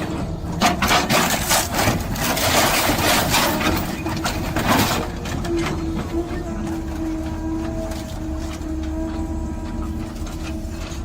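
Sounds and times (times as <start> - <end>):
engine droning: 0.0 - 11.0
shredder crunching material: 0.6 - 5.5.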